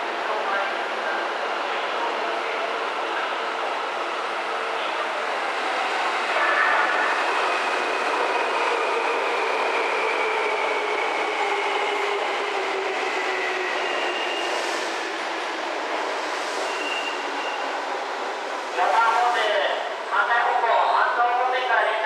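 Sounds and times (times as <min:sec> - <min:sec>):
train wheels on rails: 0:07.0 - 0:17.7
brake squeal: 0:16.6 - 0:17.6.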